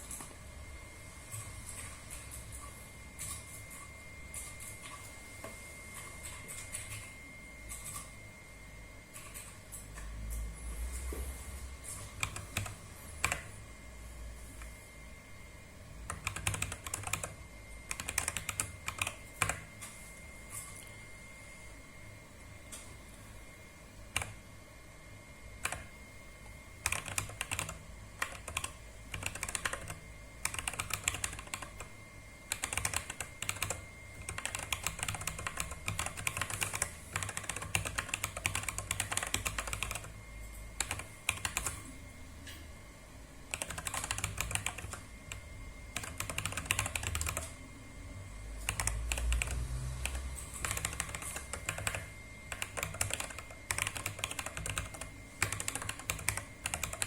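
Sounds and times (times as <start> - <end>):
mechanical keyboard typing: 11.8 - 13.5, 16.0 - 19.8, 24.1 - 24.4, 25.6 - 26.0, 26.8 - 31.9, 32.5 - 40.2, 40.8 - 41.8, 43.5 - 47.6, 48.6 - 57.0.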